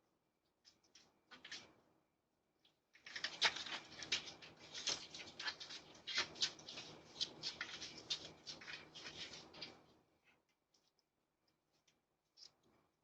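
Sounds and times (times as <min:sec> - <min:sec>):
raccoons scrabbling: 0:03.0 - 0:11.0.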